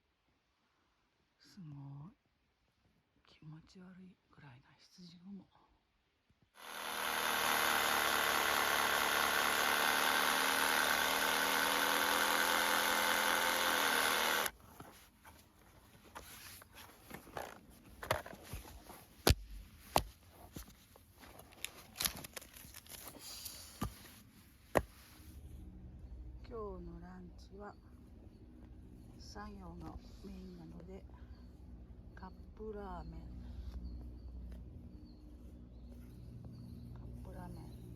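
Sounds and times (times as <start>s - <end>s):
small motor tool running: 6.6s - 14.6s.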